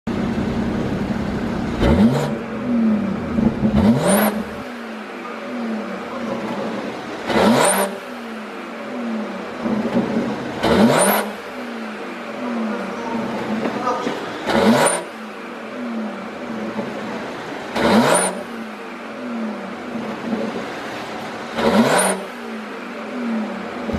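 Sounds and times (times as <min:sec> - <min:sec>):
car engine revving: 0:00.1 - 0:23.9
exhaust pops and crackles: 0:09.6 - 0:10.8.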